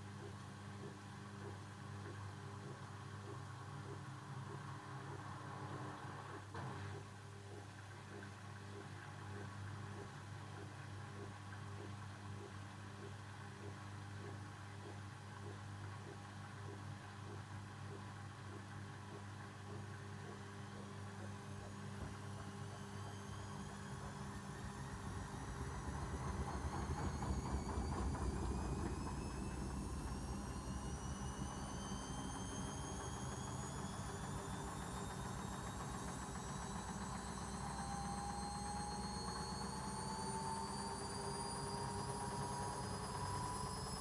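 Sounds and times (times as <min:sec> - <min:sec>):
washing machine motor whine: 0:19.7 - 0:44.0.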